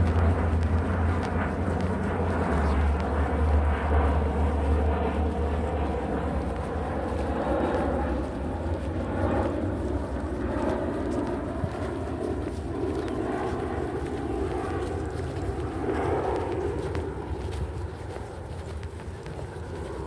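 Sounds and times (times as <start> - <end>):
footsteps walking: 0.0 - 20.0
steady low rumble: 0.0 - 20.0.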